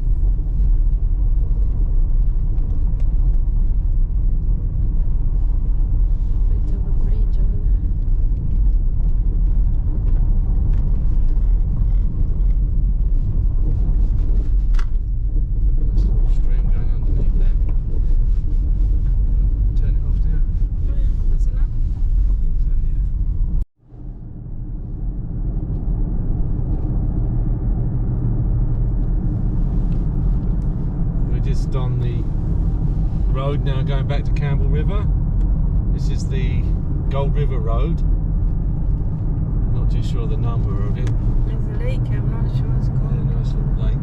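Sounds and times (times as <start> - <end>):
road rumble and tyre noise: 0.0 - 44.0.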